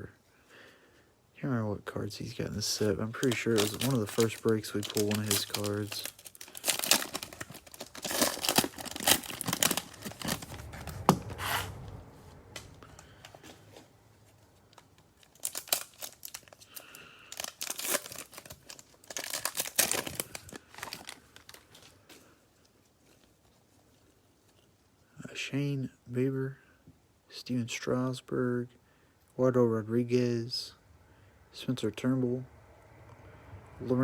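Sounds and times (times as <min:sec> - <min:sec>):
cellophane wrapper crinkling: 0:02.6 - 0:11.1, 0:14.2 - 0:24.8.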